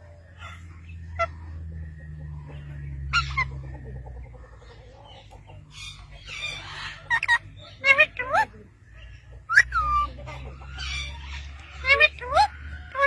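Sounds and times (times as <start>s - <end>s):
parrot squawking: 3.1s - 3.6s, 5.7s - 8.5s, 9.5s - 13.0s.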